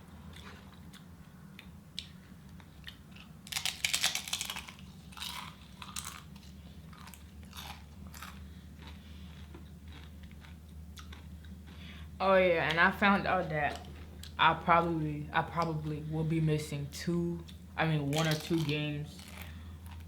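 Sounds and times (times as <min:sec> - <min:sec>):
chips being crunched and chewed: 0:02.0 - 0:11.6, 0:18.1 - 0:20.0.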